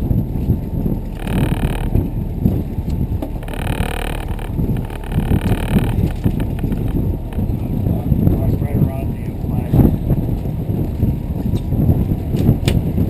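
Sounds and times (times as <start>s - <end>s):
boat motor rumbling: 0.0s - 13.0s
wind buffeting microphone: 0.0s - 13.0s.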